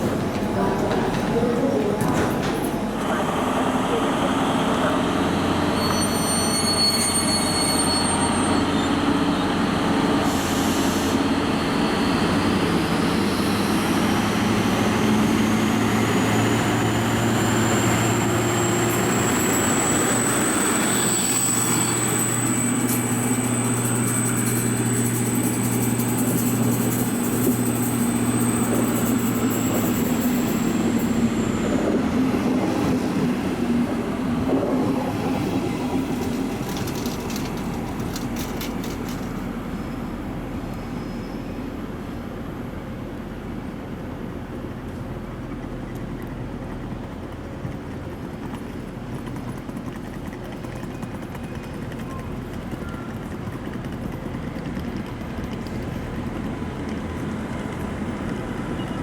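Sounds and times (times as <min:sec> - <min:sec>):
diesel train engine drone: 0:00.0 - 0:59.0
high thin squeal: 0:05.7 - 0:09.5, 0:17.5 - 0:31.7.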